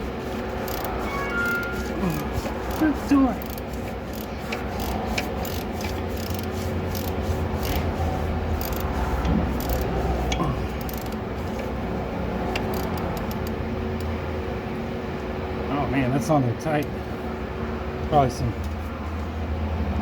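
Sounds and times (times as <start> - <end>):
steady low hum: 0.0 - 16.2
wrench clicking on bolt: 0.6 - 1.0, 3.4 - 7.8, 8.6 - 8.9, 9.6 - 9.9, 10.8 - 11.7, 12.5 - 13.6.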